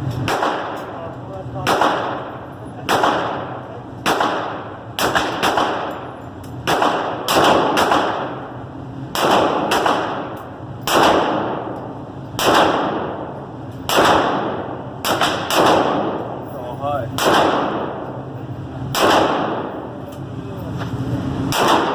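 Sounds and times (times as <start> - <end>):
carbine gunshots: 0.2 - 1.0, 1.6 - 8.5, 9.1 - 11.8, 12.4 - 16.4, 17.1 - 18.3, 18.9 - 20.0, 21.5 - 21.9.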